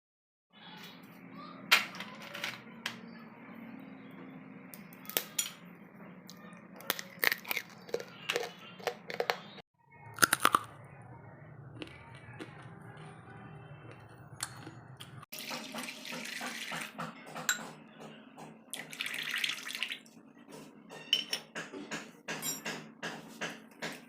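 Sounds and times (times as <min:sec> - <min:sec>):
crackers crunching: 0:06.8 - 0:09.4, 0:10.2 - 0:10.7, 0:11.7 - 0:12.8.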